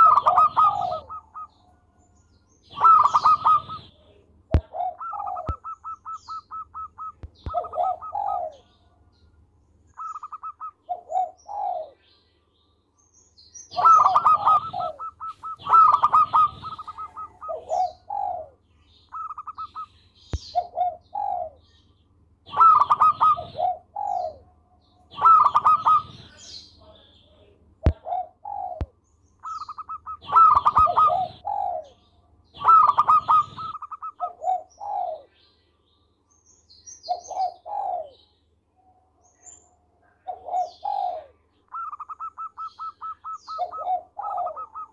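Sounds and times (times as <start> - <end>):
dove cooing: 0.0 - 1.7, 2.6 - 8.9, 9.9 - 12.0, 13.7 - 21.7, 22.5 - 24.5, 25.1 - 26.6, 27.8 - 35.4, 37.0 - 38.2, 40.0 - 44.9.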